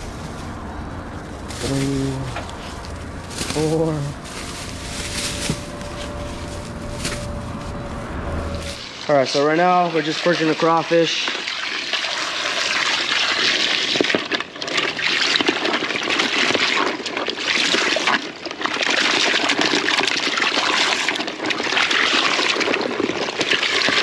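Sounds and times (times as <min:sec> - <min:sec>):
water pouring and splashing: 0:08.4 - 0:24.0.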